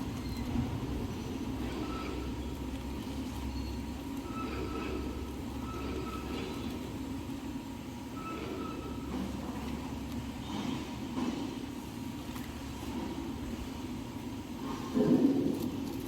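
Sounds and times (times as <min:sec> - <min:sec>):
faint machine whine: 0:00.0 - 0:16.0.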